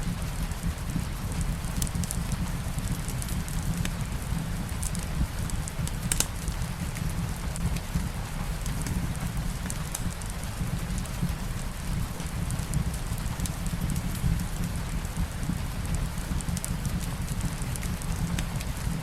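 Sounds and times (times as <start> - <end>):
light rain: 0.0 - 19.0
wood fire crackling and popping: 0.0 - 19.0.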